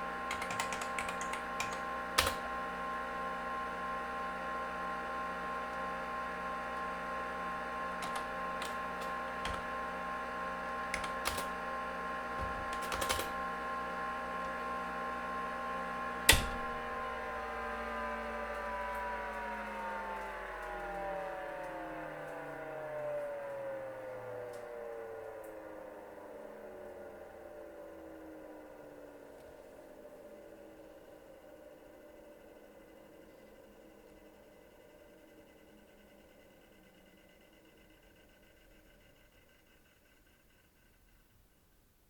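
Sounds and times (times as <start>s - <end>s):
computer hard drive and fan whine: 0.0s - 42.0s
sharp power switch click: 16.3s - 16.9s.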